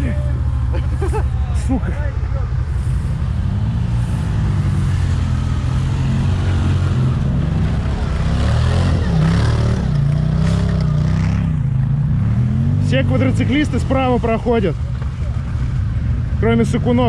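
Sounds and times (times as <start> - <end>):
atv engine revving: 0.0 - 17.0.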